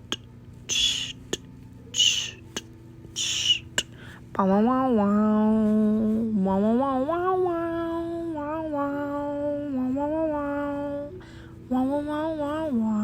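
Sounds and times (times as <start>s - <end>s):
woman humming: 0.0s - 4.5s.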